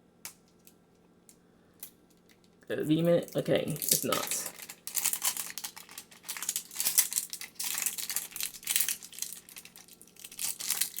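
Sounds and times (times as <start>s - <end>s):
plastic wrapping rustling and tearing: 3.3s - 11.0s.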